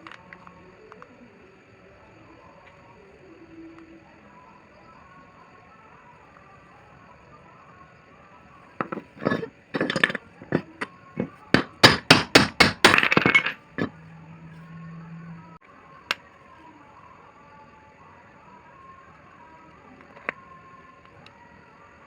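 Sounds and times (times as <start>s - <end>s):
metal tool taps and knocks: 8.8s - 14.0s
low steady hum: 8.8s - 15.6s.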